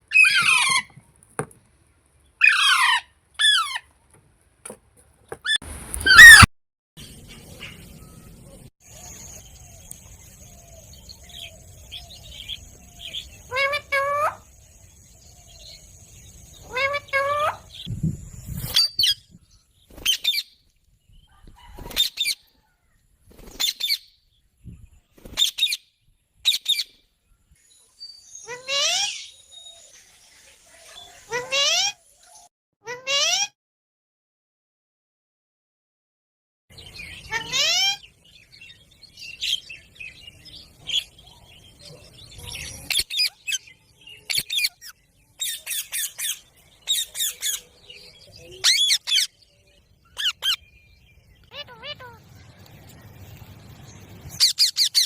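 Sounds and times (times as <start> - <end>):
parakeet squawking: 0.1 - 0.9, 2.4 - 3.8, 5.4 - 6.5, 13.5 - 14.4, 48.6 - 49.4, 50.2 - 50.6, 51.5 - 52.2, 54.4 - 55.0
parrot rising call: 0.1 - 0.9, 2.4 - 3.8, 5.5 - 6.5
parrot chirping: 0.1 - 1.0, 2.4 - 3.8, 5.4 - 6.5, 12.4 - 14.5, 42.6 - 47.7, 48.6 - 49.4, 50.0 - 50.7, 51.4 - 52.2, 54.3 - 55.0.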